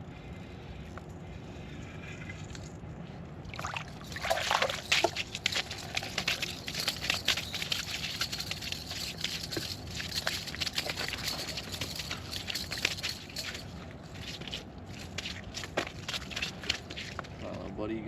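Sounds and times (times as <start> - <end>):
water sloshing and trickling: 1.6 - 17.8.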